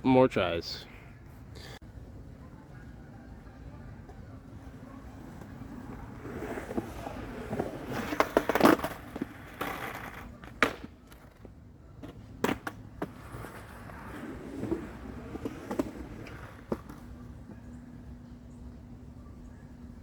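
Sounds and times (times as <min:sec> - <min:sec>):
skateboard wheels rolling: 0:02.1 - 0:20.0
skateboard clacks and slaps: 0:04.0 - 0:17.6
sharp skateboard knocks: 0:07.5 - 0:13.8.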